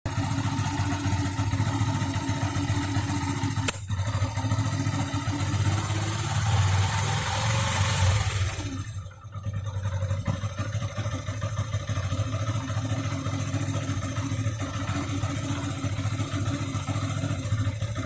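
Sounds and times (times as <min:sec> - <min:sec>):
engine popping: 0:00.1 - 0:18.0
motorcycle engine running: 0:00.1 - 0:18.0
sharp click: 0:03.6 - 0:03.9.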